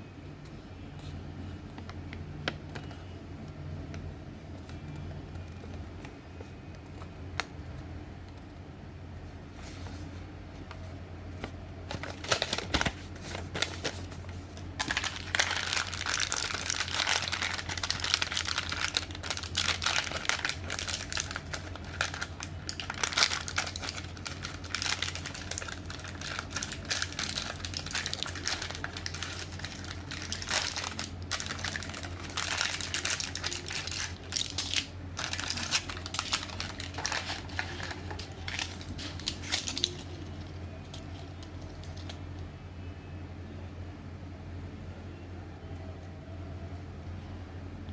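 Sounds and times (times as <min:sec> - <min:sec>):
steady low hum: 0:00.0 - 0:47.9
packaging crinkling: 0:11.4 - 0:42.4.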